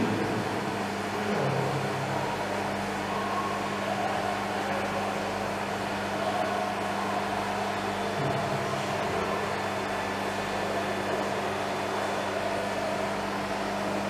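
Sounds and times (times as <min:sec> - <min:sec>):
steady mechanical hum: 0:00.0 - 0:14.0.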